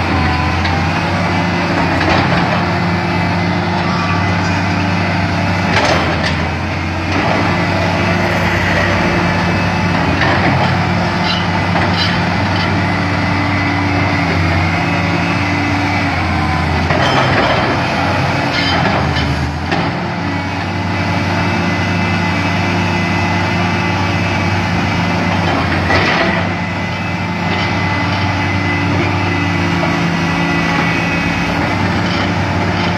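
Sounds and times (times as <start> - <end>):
excavator diesel engine running: 0.0 - 18.7.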